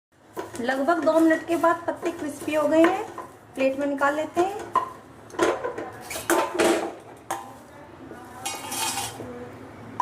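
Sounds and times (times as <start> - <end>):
spatula scraping a pan: 8.5 - 9.2.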